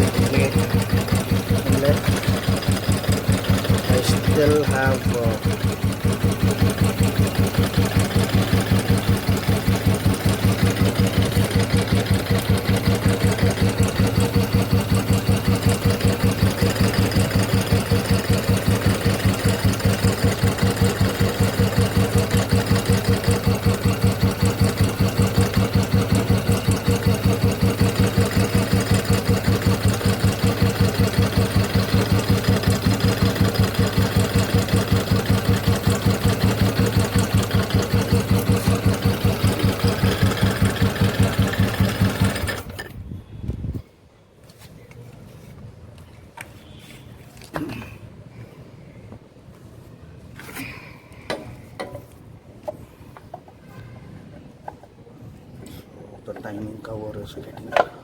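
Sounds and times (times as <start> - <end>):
motorcycle engine idling: 0.0 - 42.9
clicking slapping engine noise: 0.0 - 43.0.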